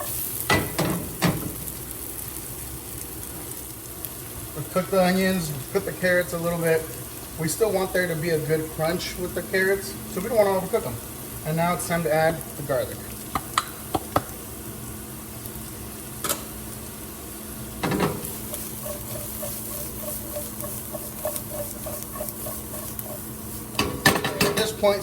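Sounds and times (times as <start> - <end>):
vegetables sizzling in oil: 0.0 - 25.0
utensil knocking against pan: 17.8 - 24.8.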